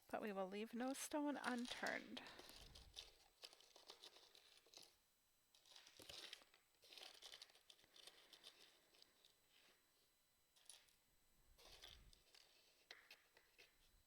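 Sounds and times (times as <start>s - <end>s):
jewelry rustling and clicking: 0.7s - 9.7s.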